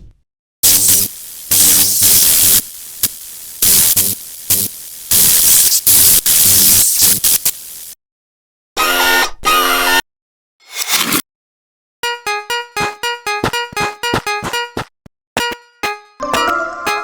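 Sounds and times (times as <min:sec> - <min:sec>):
loud electronic static bursts: 0:00.6 - 0:07.9
steady hiss: 0:00.6 - 0:08.0
music: 0:12.0 - 0:17.0.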